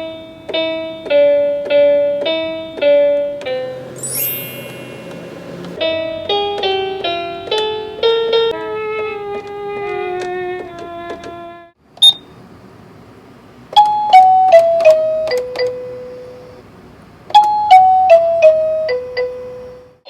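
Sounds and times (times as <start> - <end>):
toy keyboard notes: 0.0 - 11.3, 13.7 - 16.4, 17.3 - 19.9.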